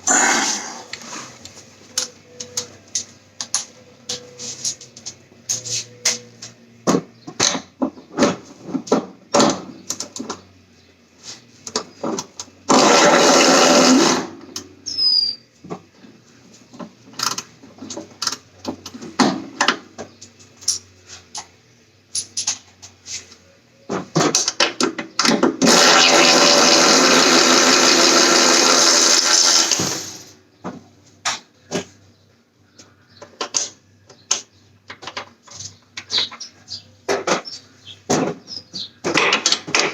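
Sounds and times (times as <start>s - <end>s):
power tool running: 12.7s - 14.4s, 25.6s - 30.4s.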